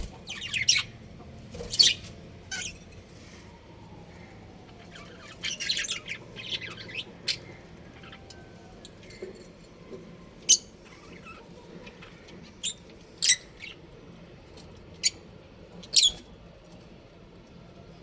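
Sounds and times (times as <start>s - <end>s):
budgerigars chirping: 0.0s - 1.0s, 1.6s - 2.8s, 4.9s - 8.6s.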